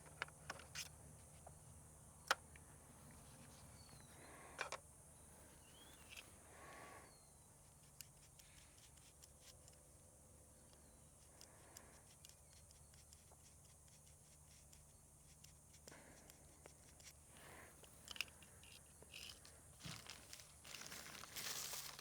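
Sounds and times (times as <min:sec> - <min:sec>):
small handling noises: 0:00.0 - 0:06.8, 0:07.5 - 0:22.0.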